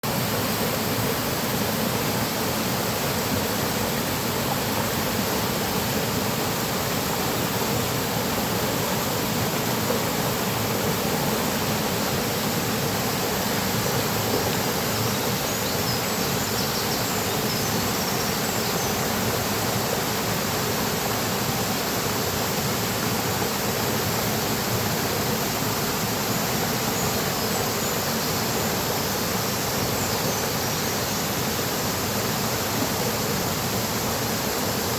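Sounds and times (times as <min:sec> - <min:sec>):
stream rushing over rocks: 0:00.0 - 0:34.9.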